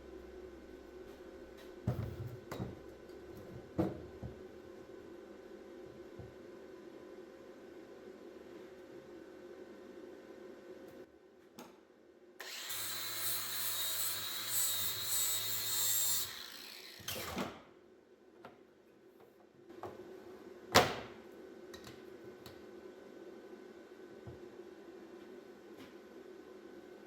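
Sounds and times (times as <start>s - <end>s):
power tool running: 12.4s - 17.4s.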